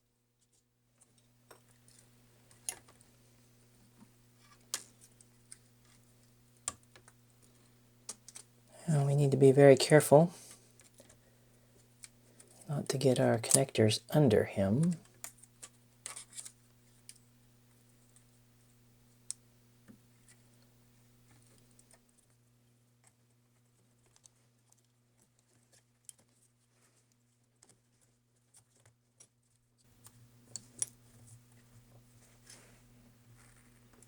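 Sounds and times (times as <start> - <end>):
small clicks and taps: 29.9 - 32.6.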